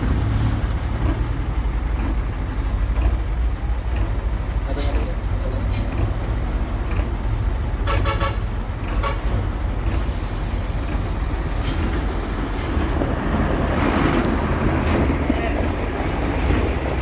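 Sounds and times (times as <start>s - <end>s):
heavy vehicle engine rumbling: 0.0s - 17.0s
road or wind noise hiss: 9.5s - 17.0s.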